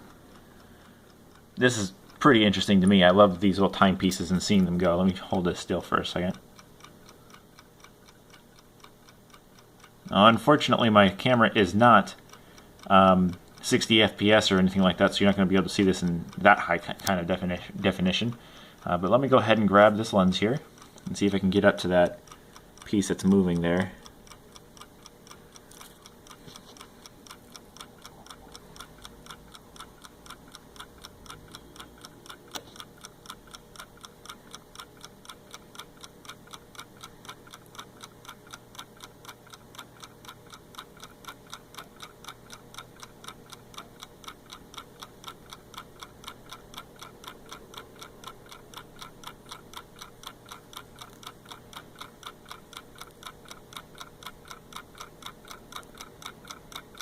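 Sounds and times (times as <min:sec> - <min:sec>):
mechanical clock ticking: 0:00.0 - 0:57.0.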